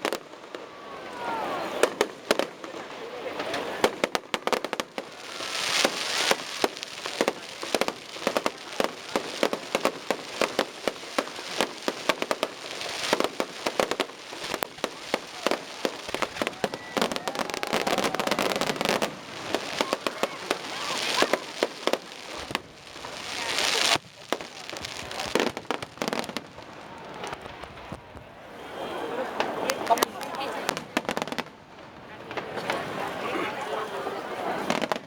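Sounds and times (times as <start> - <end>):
fireworks bangs: 0.0 - 35.0
fireworks hissing crackle: 0.0 - 35.0.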